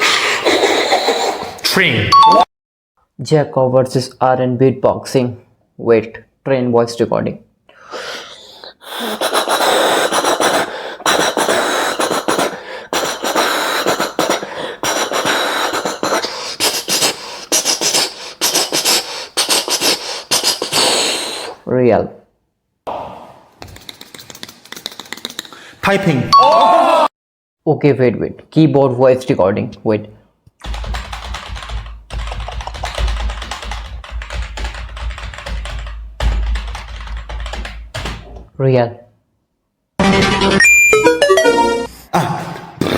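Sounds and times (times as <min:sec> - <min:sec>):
mouth clicks: 0:09.0 - 0:21.6, 0:23.6 - 0:25.7
beatboxed train chugging: 0:09.7 - 0:20.9
mouth clicks imitating typing: 0:23.6 - 0:25.6, 0:30.6 - 0:38.4.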